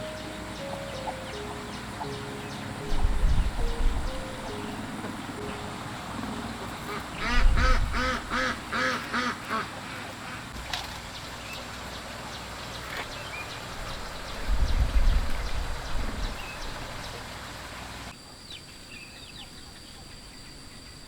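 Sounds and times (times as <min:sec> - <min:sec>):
low rumbling bumps: 0:00.0 - 0:08.7, 0:10.6 - 0:17.2
duck quacking: 0:06.4 - 0:10.6.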